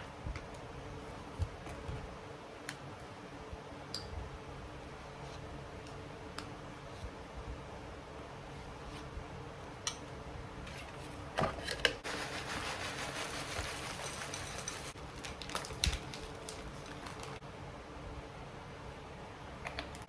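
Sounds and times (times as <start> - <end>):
rustling: 12.0 - 17.4.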